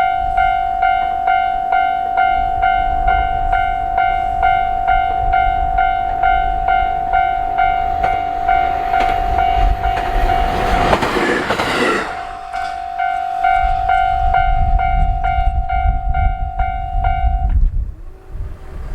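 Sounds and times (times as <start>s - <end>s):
diesel railcar rumble: 0.0s - 18.9s
loud rush of passing railcar: 0.0s - 18.9s.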